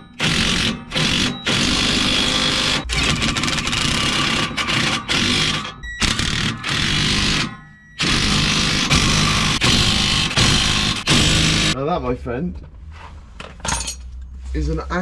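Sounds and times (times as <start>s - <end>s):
impact wrench hammering: 0.0s - 11.8s.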